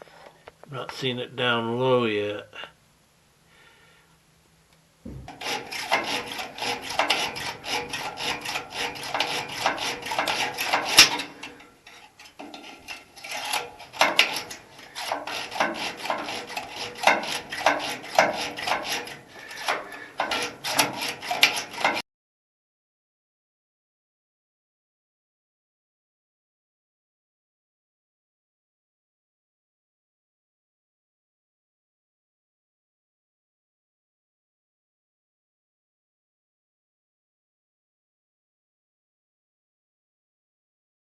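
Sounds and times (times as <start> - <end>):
hand scraping metal bodywork: 5.1 - 22.0.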